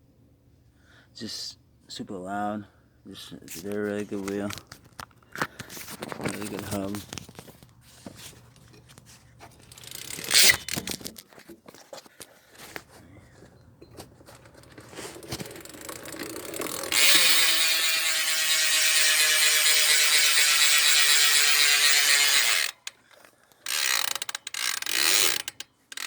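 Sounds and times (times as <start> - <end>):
bicycle hub ratchet buzzing: 9.6 - 10.8, 15.1 - 23.0, 23.6 - 26.0.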